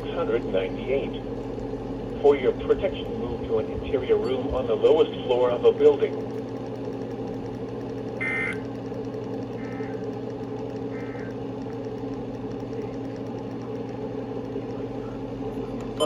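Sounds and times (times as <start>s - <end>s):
low hum and hiss: 0.0s - 16.0s
warbling data tone bursts: 0.0s - 16.0s.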